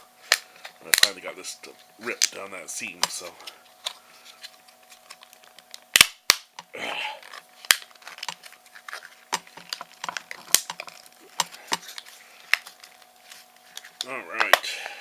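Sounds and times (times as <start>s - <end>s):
plastic scraping tear: 3.0s - 14.7s
plastic case cracking: 4.9s - 13.1s.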